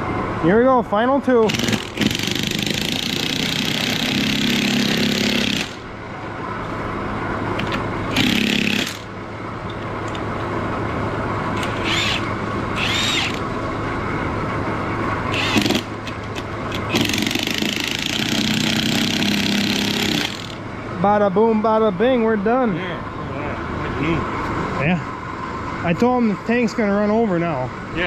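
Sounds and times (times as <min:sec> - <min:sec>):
power tool running: 0:01.4 - 0:05.8, 0:07.6 - 0:09.1, 0:11.6 - 0:13.6, 0:15.3 - 0:20.6.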